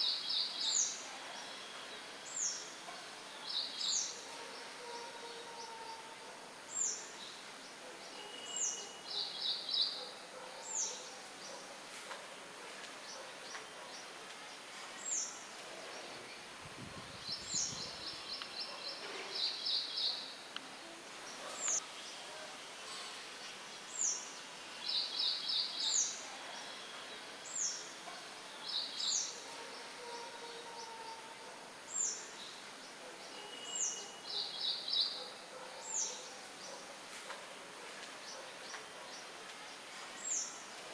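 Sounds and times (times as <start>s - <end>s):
songbirds chirping: 0.0s - 22.6s, 23.4s - 40.9s
wind rustling leaves: 14.3s - 29.3s.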